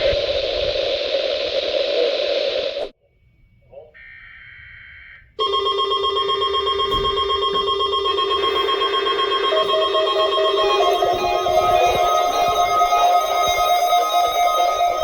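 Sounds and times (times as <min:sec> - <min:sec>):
faint pitched tones: 0:02.8 - 0:15.0
steady alarm tone: 0:03.2 - 0:15.0.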